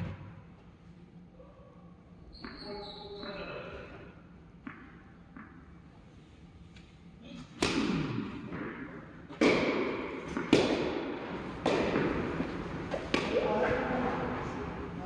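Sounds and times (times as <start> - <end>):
tennis balls hit by rackets: 4.5 - 5.8, 7.3 - 15.0.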